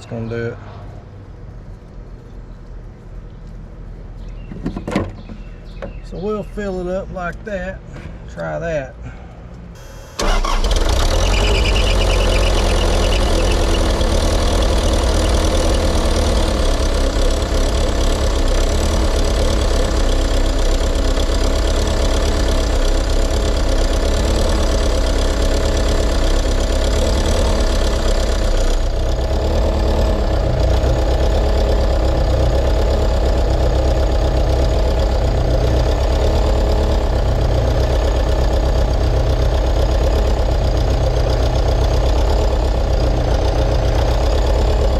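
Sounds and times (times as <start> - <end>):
diesel engine knocking clatter: 10.2 - 44.9.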